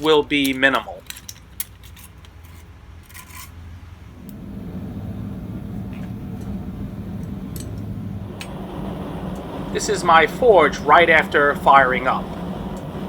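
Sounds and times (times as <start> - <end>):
forge rumbling: 4.2 - 13.0.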